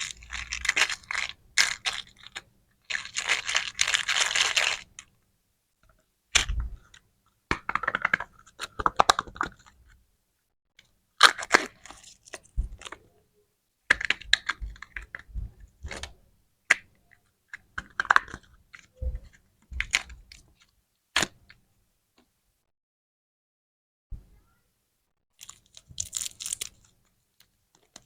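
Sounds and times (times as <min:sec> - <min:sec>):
plastic packaging crackling: 0:00.0 - 0:05.0, 0:25.4 - 0:27.0.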